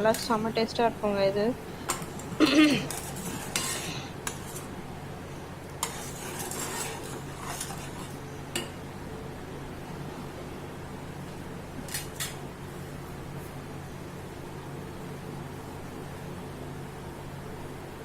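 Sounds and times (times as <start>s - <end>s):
metal spoon stirring in pan: 0.0s - 0.8s, 1.8s - 4.8s, 5.6s - 8.8s.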